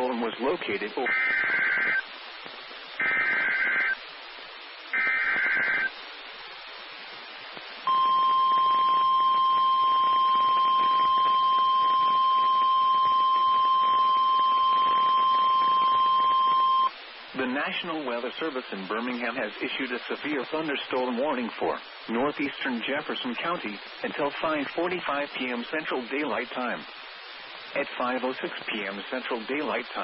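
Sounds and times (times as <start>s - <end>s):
harsh warbling digital data tones: 1.0s - 2.0s, 3.0s - 4.0s, 4.9s - 5.9s.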